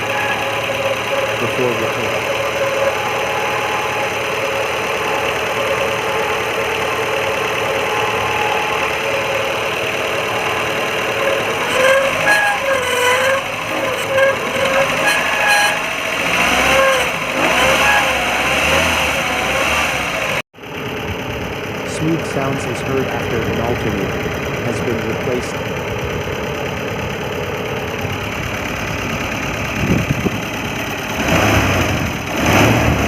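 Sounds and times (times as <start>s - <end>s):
wavering pitched sound: 0.0s - 18.4s
engine running: 0.0s - 33.0s
grinding whine from alternator: 0.0s - 33.0s.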